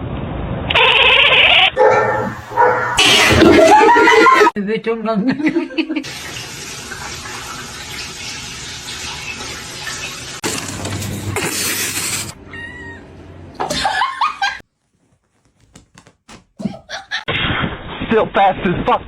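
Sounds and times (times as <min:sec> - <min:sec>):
cat meowing: 0:12.5 - 0:13.1.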